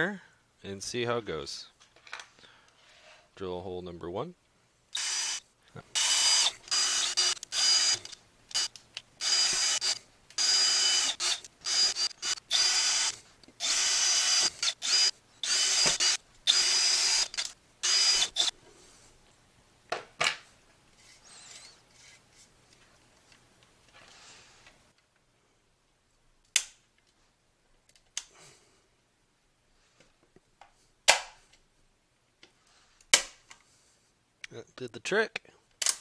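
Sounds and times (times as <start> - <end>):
power drill whining: 5.0 - 18.5, 21.1 - 21.8.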